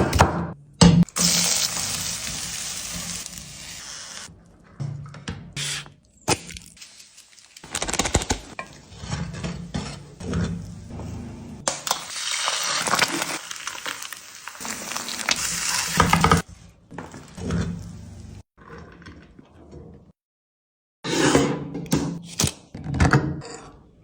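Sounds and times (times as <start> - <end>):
food sizzling in a frying pan: 1.2 - 4.3, 11.9 - 16.4
utensil scraping a pan: 8.6 - 11.6.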